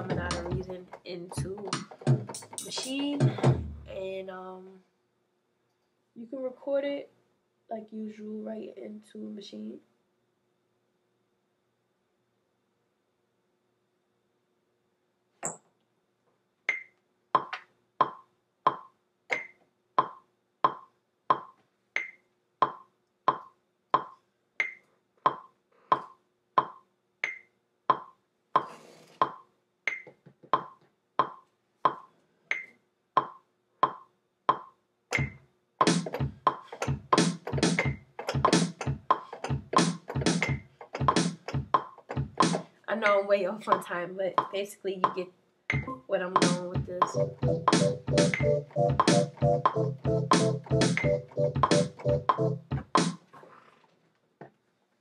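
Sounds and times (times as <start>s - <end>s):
drum machine hits: 0.0s - 4.0s, 35.2s - 42.6s, 45.8s - 53.2s.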